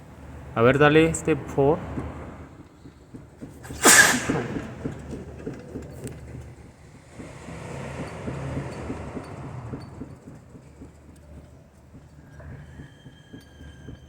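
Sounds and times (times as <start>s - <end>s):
car suspension clunking: 1.9s - 11.6s.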